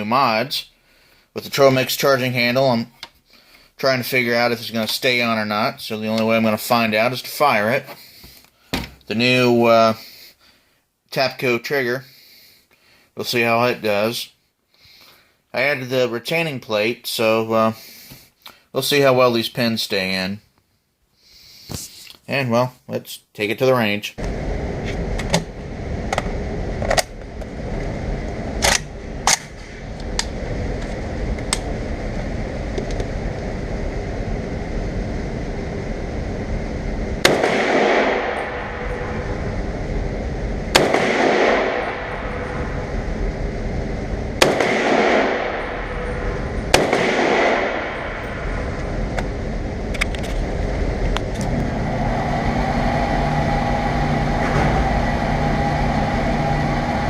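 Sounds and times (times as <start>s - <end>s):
rifle shots: 37.2s - 38.8s, 40.7s - 42.6s, 44.4s - 48.6s
long echo of shots: 37.2s - 51.0s.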